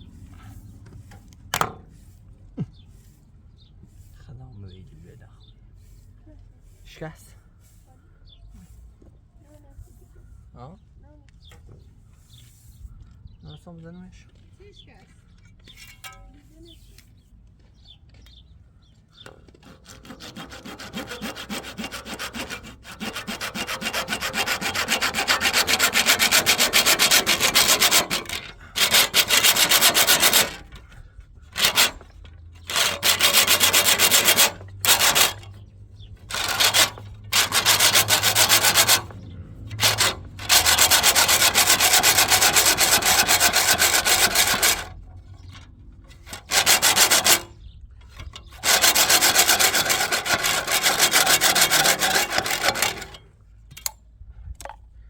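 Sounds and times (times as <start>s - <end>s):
power tool sanding hard material: 19.6s - 30.9s, 31.5s - 53.2s.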